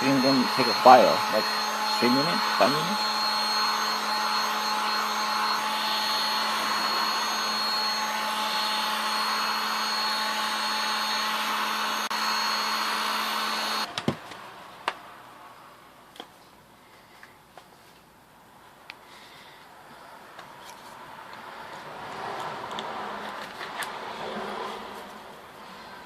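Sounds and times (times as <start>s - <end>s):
heat gun running: 0.0s - 13.9s.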